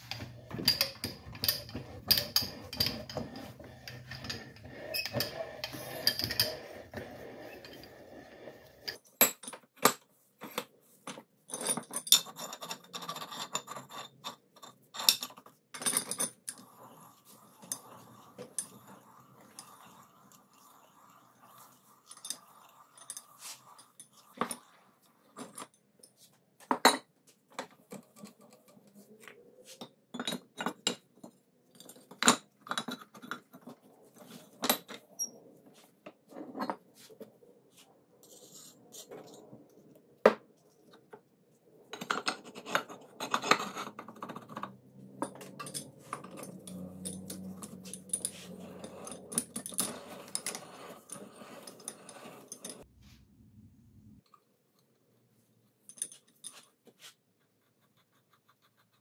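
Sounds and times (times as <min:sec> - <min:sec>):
metal parts clinking: 0:45.2 - 0:50.6.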